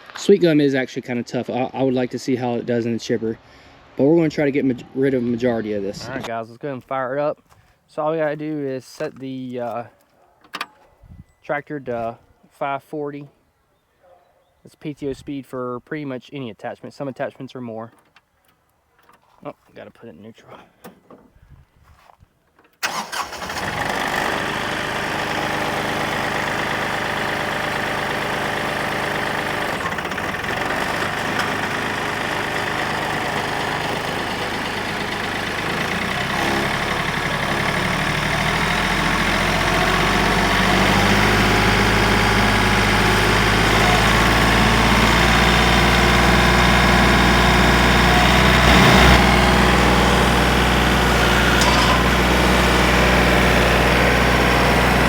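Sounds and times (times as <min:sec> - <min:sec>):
tractor diesel engine running: 0:22.8 - 0:55.0.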